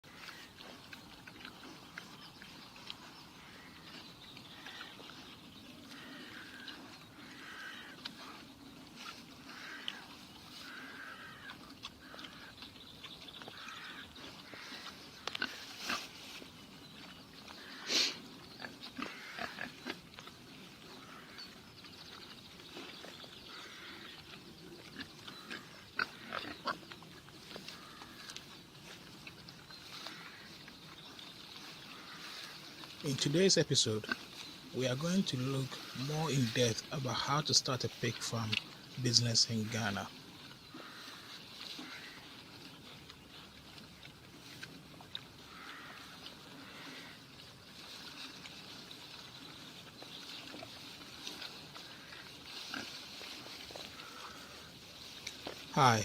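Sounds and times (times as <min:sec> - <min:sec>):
pigs grunting and squealing: 0:00.1 - 0:12.7, 0:13.4 - 0:16.1, 0:17.4 - 0:31.2, 0:31.8 - 0:40.1, 0:40.7 - 0:42.4, 0:44.6 - 0:47.4, 0:50.5 - 0:54.8.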